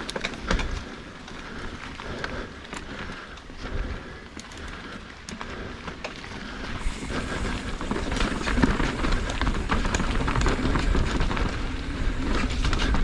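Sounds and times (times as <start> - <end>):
bike tyres on dirt: 0.0 - 13.0
wind rumbling on microphone: 6.4 - 13.0.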